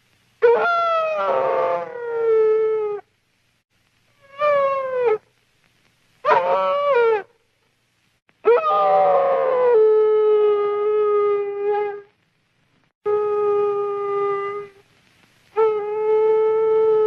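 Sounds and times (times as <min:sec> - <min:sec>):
cartoon dog howling: 0:00.4 - 0:03.0, 0:06.3 - 0:07.3, 0:08.5 - 0:12.0.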